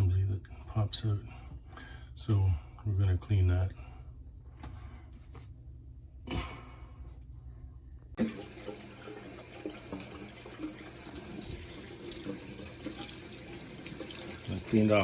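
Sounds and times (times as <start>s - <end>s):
tap water running: 8.2s - 15.0s.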